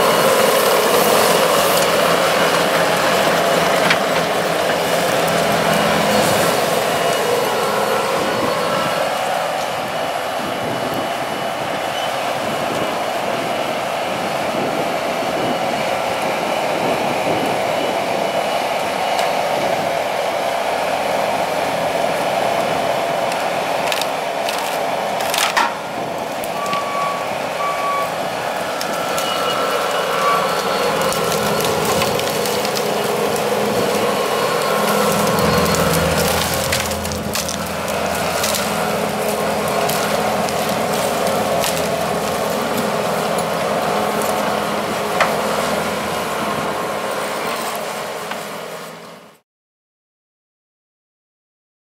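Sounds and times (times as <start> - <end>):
heavy machinery running: 0.0 - 49.4
wood cracking and splintering: 1.0 - 7.2, 23.2 - 26.8, 28.7 - 45.8
short beeps: 26.6 - 28.2.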